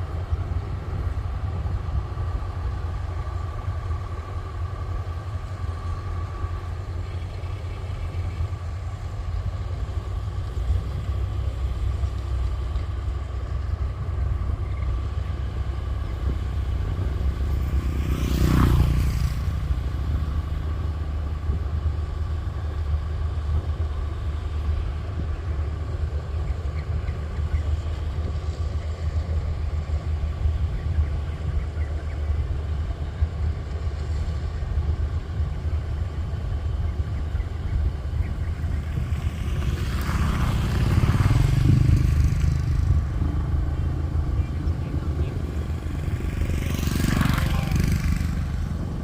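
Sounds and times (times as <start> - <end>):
thin steady whine: 0.0 - 17.9
diesel engine droning: 0.0 - 49.0.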